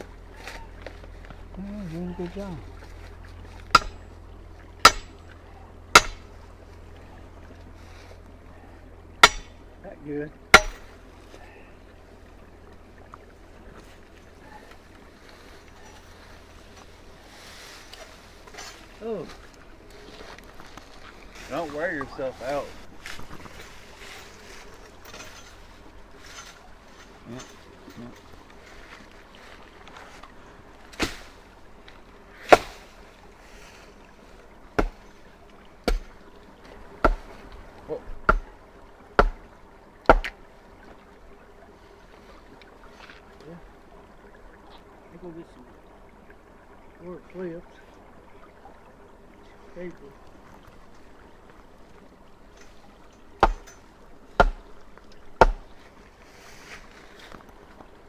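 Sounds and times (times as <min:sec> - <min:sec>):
faint stream trickling: 0:00.0 - 0:58.0
fence post being pounded: 0:03.7 - 0:04.1, 0:04.8 - 0:05.3, 0:05.9 - 0:06.3, 0:09.2 - 0:09.6, 0:10.5 - 0:10.9, 0:32.5 - 0:32.8, 0:34.8 - 0:35.0, 0:35.8 - 0:36.1, 0:37.0 - 0:37.3, 0:38.2 - 0:38.6, 0:39.2 - 0:39.4, 0:40.1 - 0:40.4, 0:53.4 - 0:53.8, 0:54.4 - 0:54.7, 0:55.4 - 0:55.7.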